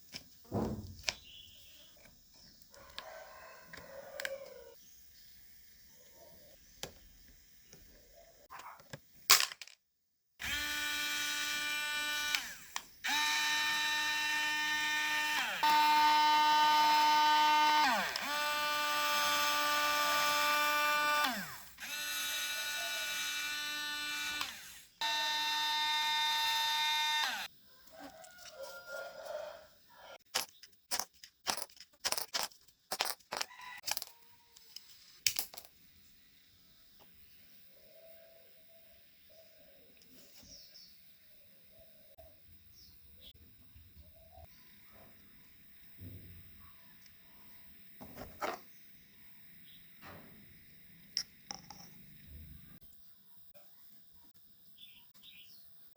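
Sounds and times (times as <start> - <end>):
small electric fan motor whining: 10.4 - 27.5.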